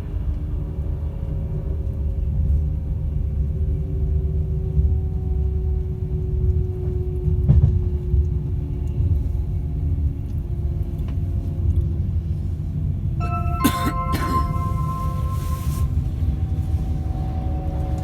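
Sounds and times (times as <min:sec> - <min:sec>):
ringing tones: 0:13.2 - 0:16.1
train rumbling: 0:13.2 - 0:18.0.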